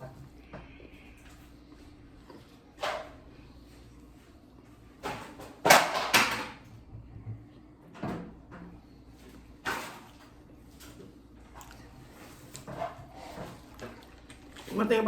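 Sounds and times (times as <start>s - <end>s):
biting and chewing food: 10.9s - 14.8s.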